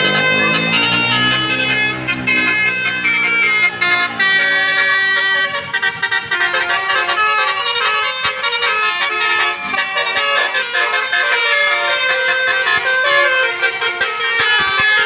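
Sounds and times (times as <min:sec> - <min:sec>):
musical bus horn tune: 0:00.0 - 0:15.0.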